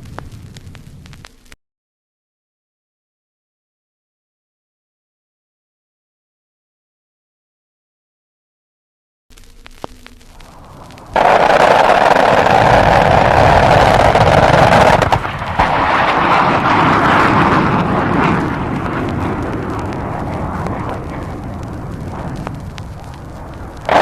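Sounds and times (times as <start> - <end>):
loud rushing roar: 10.4 - 24.0.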